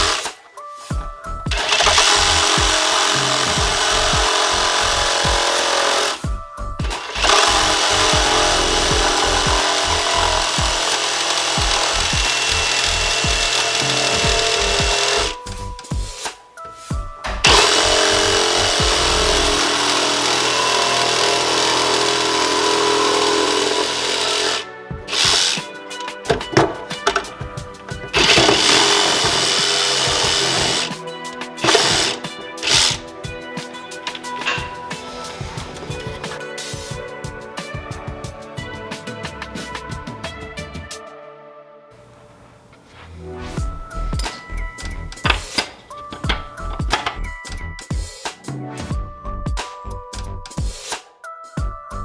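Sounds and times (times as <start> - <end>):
reciprocating saw cutting wood: 0.0 - 0.4, 1.5 - 6.2, 6.8 - 15.5, 17.3 - 36.4, 42.0 - 47.2.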